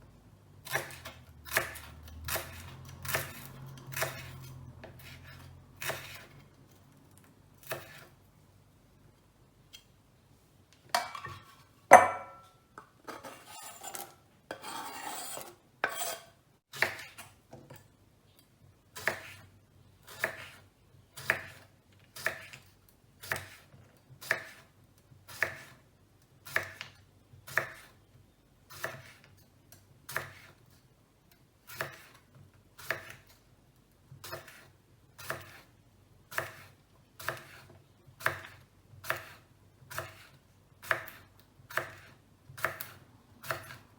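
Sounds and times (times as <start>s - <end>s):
knife slicing on cutting board: 13.2s - 17.2s.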